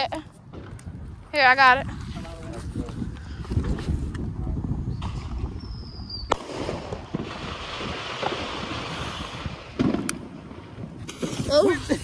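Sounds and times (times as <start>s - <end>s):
firework crack: 4.9s - 12.0s.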